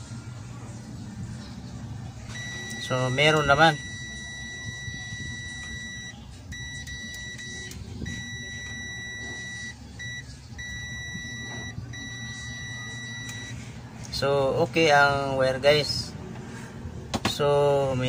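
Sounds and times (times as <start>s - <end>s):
multimeter continuity beep: 2.3s - 13.6s.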